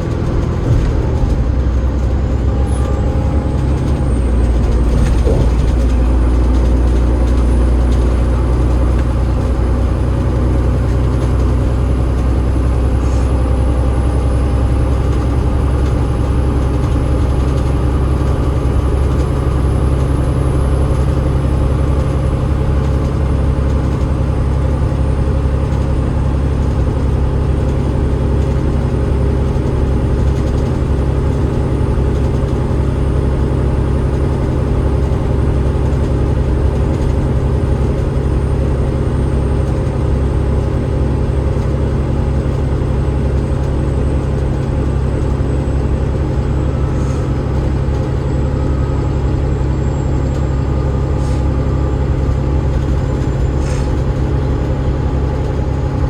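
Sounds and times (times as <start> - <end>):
bus diesel engine drone: 0.0 - 56.0.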